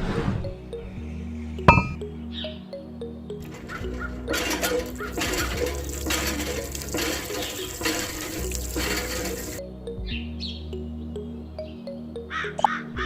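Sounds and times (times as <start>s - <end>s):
background music: 0.0s - 13.0s
water splashing from hand pump: 3.7s - 9.6s.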